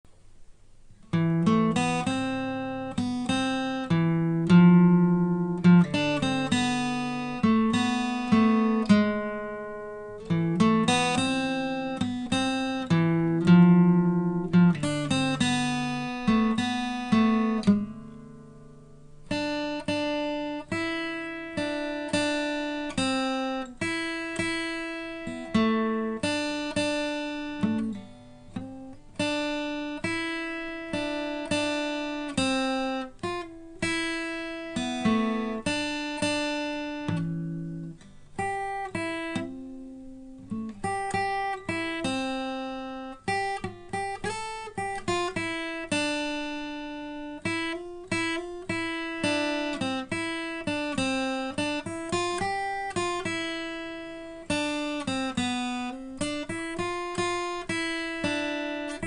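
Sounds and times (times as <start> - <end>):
solo guitar melody: 0.1 - 59.0.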